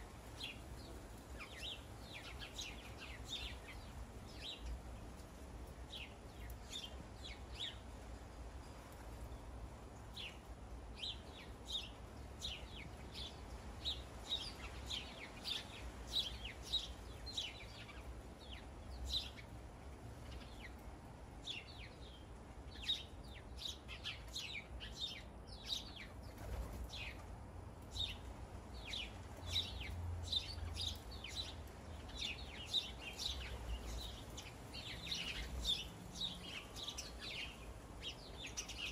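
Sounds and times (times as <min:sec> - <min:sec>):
birds chirping: 0:00.0 - 0:08.0, 0:08.6 - 0:38.9.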